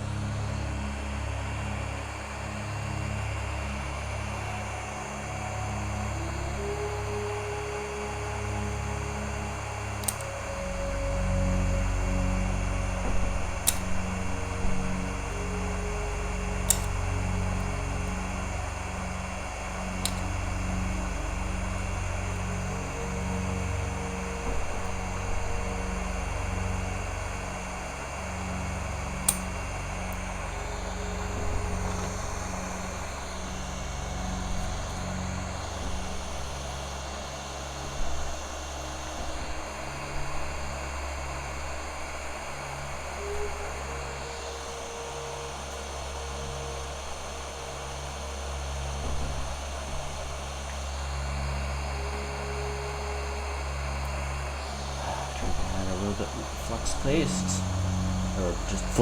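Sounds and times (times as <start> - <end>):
hot-air tool blowing: 0.0 - 59.0
low pulsing hum: 0.0 - 59.0
sharp click: 16.6 - 17.0, 20.0 - 20.4, 29.3 - 29.6.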